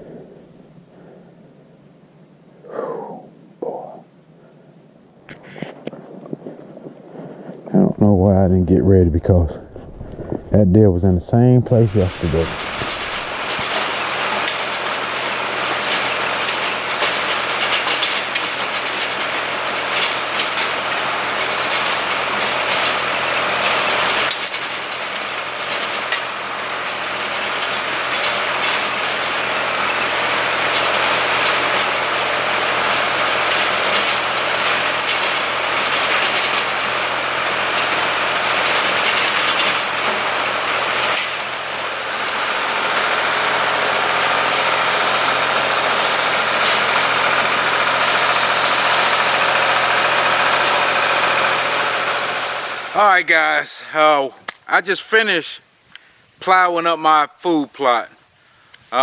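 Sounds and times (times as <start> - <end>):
tractor engine running under load: 8.1 - 53.6
plow clattering and rattling: 11.8 - 53.2.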